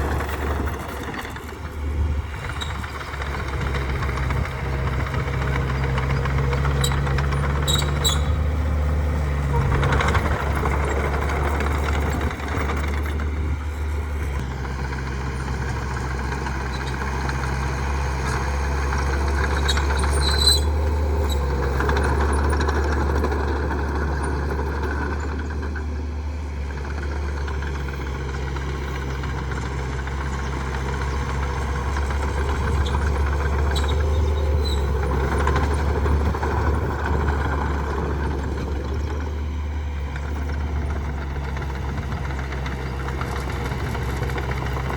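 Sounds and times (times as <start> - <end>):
diesel machinery running: 0.0 - 44.9
high-pitched squeals: 2.3 - 13.1, 32.3 - 36.1.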